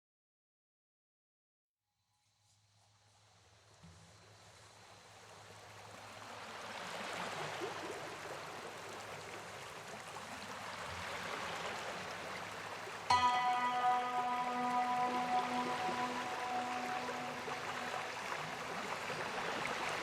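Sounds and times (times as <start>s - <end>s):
running water rushing: 5.8s - 20.0s.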